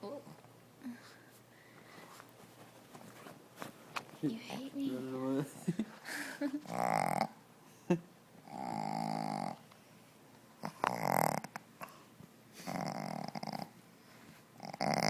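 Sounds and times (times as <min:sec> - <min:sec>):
dog snoring: 0:06.6 - 0:07.4, 0:08.4 - 0:09.6, 0:10.6 - 0:12.0, 0:12.6 - 0:13.8, 0:14.6 - 0:15.0.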